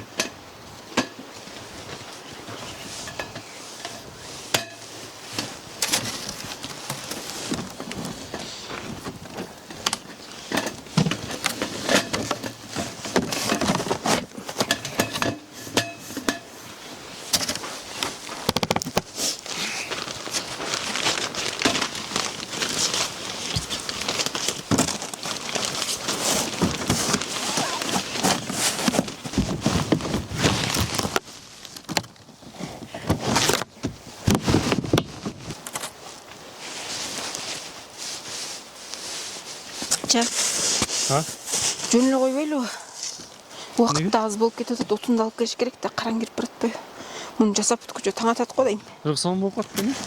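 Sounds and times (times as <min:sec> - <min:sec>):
snow crunching and scraping: 0:19.1 - 0:31.8, 0:32.4 - 0:44.8.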